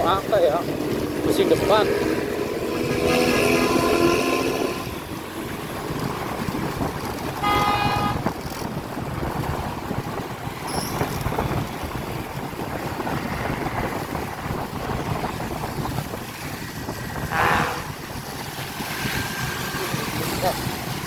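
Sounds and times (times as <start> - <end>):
bus exhaust rumble: 0.0 - 21.0
wind on microphone: 0.0 - 21.0
bus horn: 3.3 - 5.0, 7.4 - 8.3, 17.3 - 18.0.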